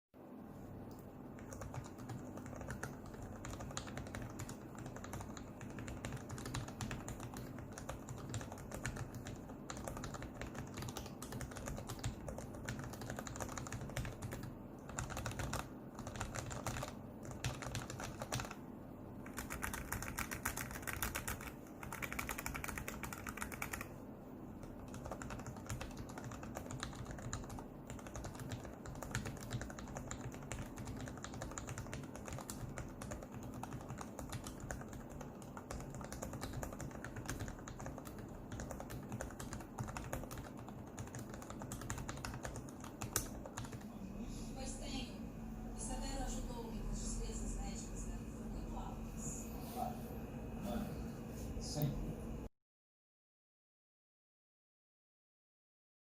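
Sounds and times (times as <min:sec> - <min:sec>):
mechanical keyboard typing: 0:01.4 - 0:18.6, 0:19.2 - 0:24.0, 0:24.6 - 0:43.8.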